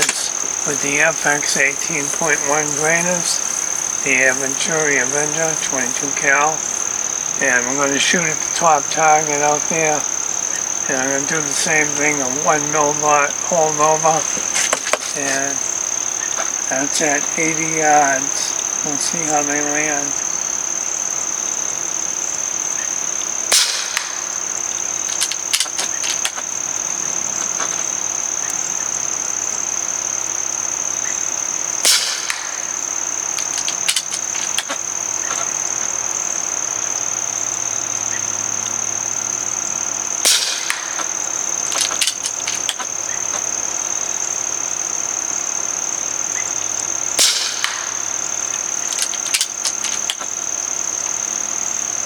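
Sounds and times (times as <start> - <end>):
air rifle shots: 0.0 - 20.0, 23.2 - 28.7, 31.6 - 36.8, 39.2 - 44.5, 46.4 - 51.2
crickets trilling: 0.0 - 52.0.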